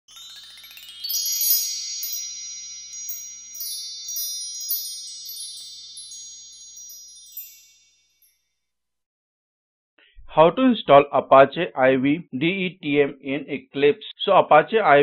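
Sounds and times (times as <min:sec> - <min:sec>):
high bell-like chime tones: 0:00.0 - 0:08.7.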